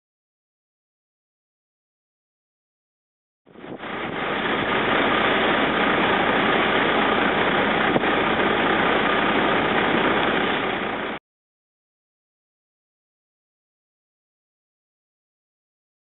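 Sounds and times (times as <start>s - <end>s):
heavy machinery engine rumbling: 3.5s - 11.2s.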